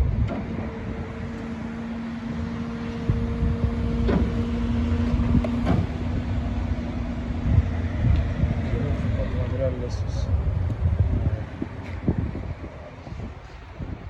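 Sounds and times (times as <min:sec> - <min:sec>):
truck engine humming: 0:00.0 - 0:14.0.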